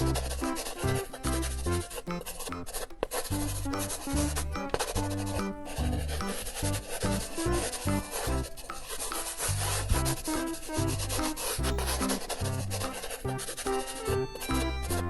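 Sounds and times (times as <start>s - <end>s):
background music with bass line: 0.0s - 2.7s, 3.3s - 8.7s, 9.4s - 15.0s.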